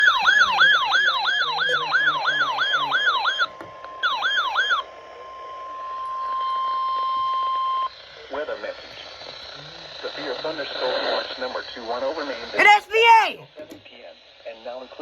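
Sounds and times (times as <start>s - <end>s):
electronic siren whooping: 0.0s - 7.9s
steady high alert tone: 12.6s - 13.4s.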